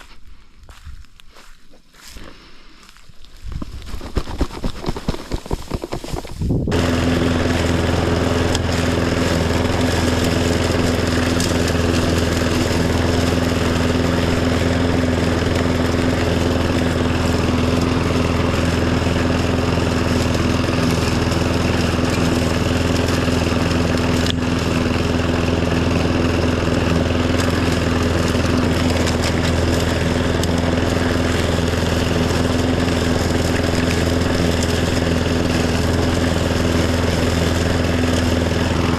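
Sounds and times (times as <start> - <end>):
mower engine running: 3.8 - 38.9.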